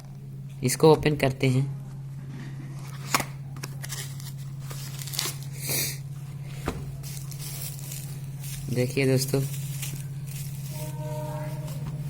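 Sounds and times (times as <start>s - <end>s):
low electrical hum: 0.0s - 12.0s
packaging crinkling and tearing: 2.9s - 6.0s, 7.0s - 10.8s.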